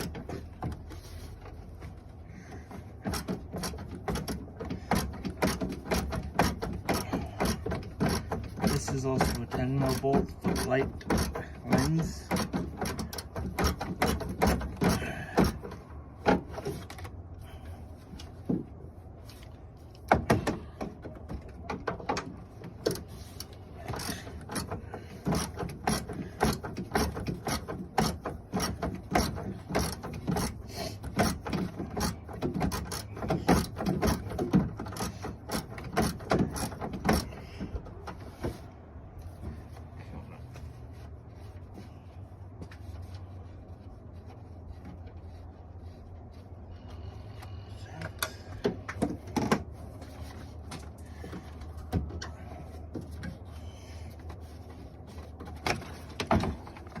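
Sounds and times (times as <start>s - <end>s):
tools and parts knocking: 1.8s - 17.2s, 19.9s - 38.6s, 48.0s - 53.4s, 54.2s - 57.0s.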